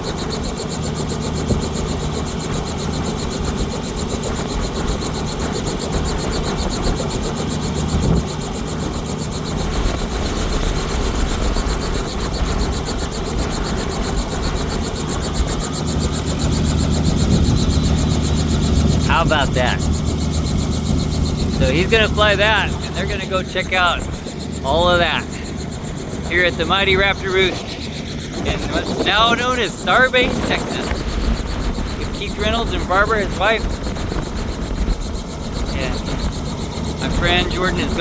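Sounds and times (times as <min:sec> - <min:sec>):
helicopter idling: 0:00.0 - 0:38.0.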